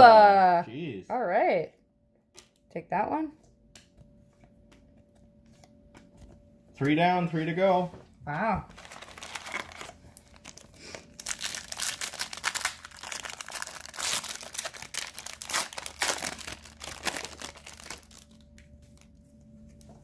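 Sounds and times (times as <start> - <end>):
wrapper tearing and crinkling: 8.7 - 19.2.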